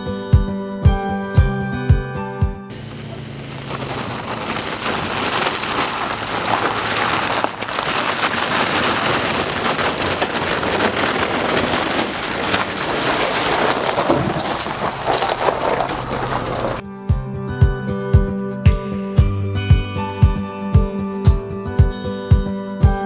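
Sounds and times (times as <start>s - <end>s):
mud and water spraying on vehicle: 2.7s - 17.0s.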